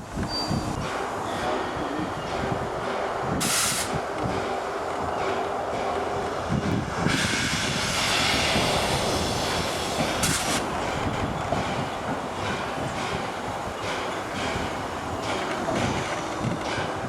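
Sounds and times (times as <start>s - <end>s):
steam train moving: 0.0s - 17.0s
steam hissing: 3.4s - 4.0s, 7.0s - 11.0s.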